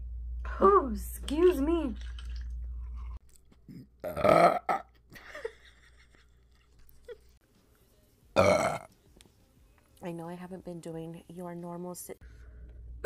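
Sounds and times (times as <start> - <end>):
woman burping: 3.7 - 5.0, 8.4 - 8.9.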